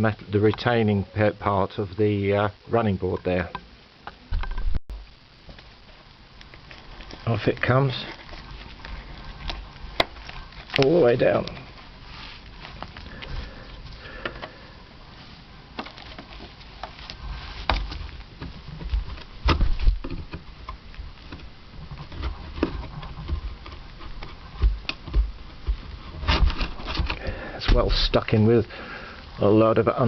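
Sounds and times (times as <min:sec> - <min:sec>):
dull thumps: 0:17.6 - 0:28.0.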